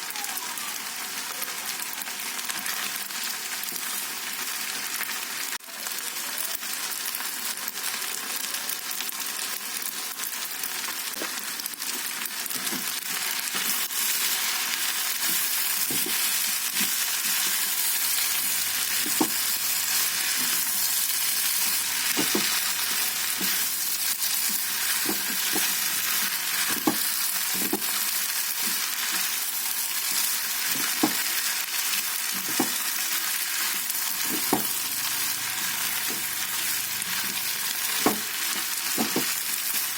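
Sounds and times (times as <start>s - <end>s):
noodles sizzling in hot pan: 0.0s - 39.9s
stirring knocks in pan: 19.0s - 19.4s, 21.8s - 23.7s, 26.6s - 28.0s, 30.7s - 31.3s, 32.4s - 32.8s, 34.2s - 34.8s, 37.9s - 39.5s.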